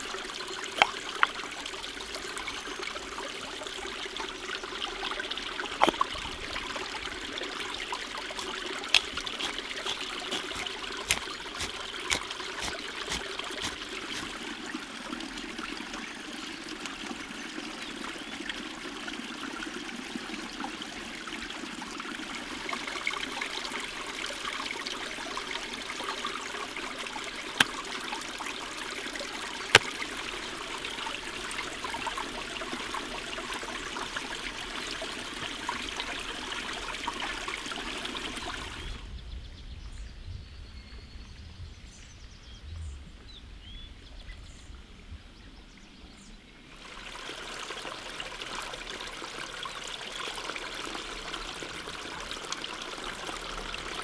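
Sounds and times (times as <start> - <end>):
water trickling: 0.0 - 39.0, 46.7 - 54.0.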